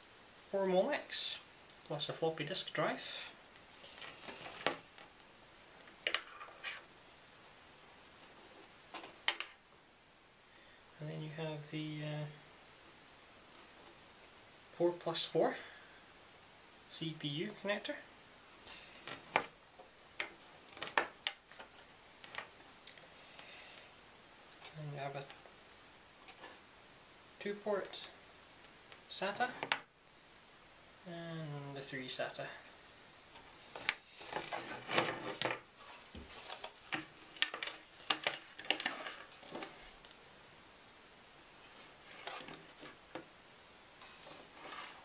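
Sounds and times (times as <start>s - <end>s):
cables rustling: 3.5s - 9.6s, 18.5s - 26.7s, 32.2s - 40.2s, 41.5s - 43.4s, 44.0s - 45.0s.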